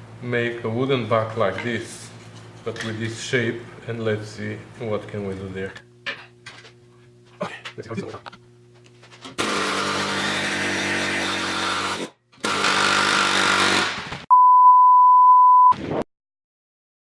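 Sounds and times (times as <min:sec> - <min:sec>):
power tool motor running: 0:09.2 - 0:14.2
steady electronic beep: 0:14.3 - 0:15.7.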